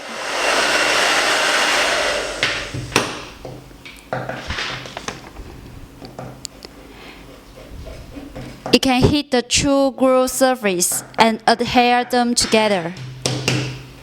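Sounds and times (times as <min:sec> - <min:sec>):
hot-air blower running: 0:00.0 - 0:04.3.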